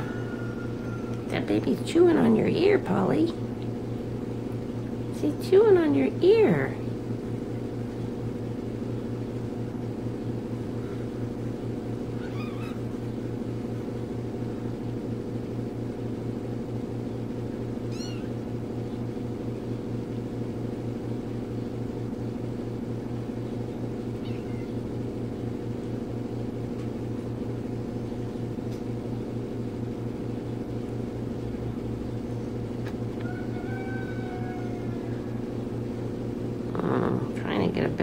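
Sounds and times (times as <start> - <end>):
steady low hum: 0.0 - 38.0
kittens mewing: 12.0 - 13.1, 17.8 - 18.6, 24.1 - 25.0.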